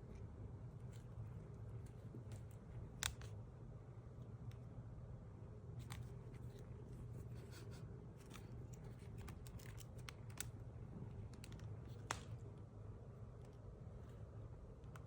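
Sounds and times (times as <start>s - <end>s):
steady low hum: 0.0s - 15.0s
faint small clicks: 8.2s - 10.6s.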